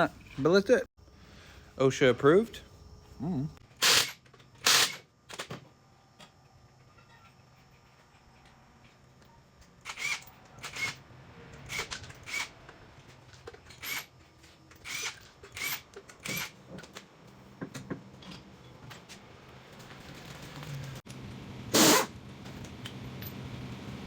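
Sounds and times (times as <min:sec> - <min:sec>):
impact wrench on lug nuts: 0:03.8 - 0:05.1.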